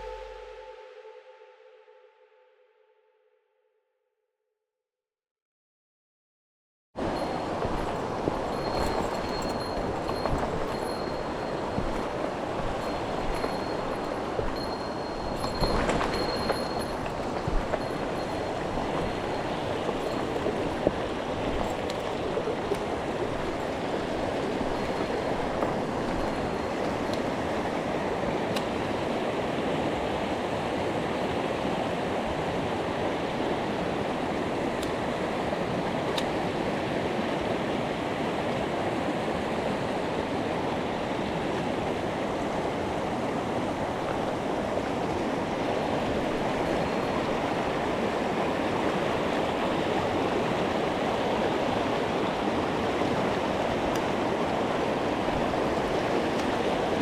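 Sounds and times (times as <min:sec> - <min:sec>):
mountain stream rushing: 0:07.0 - 0:57.0.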